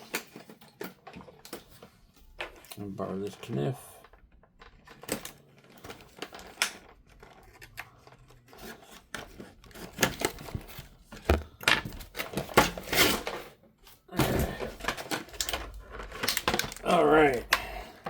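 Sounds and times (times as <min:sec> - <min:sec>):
knife cutting cardboard: 0:09.7 - 0:11.6.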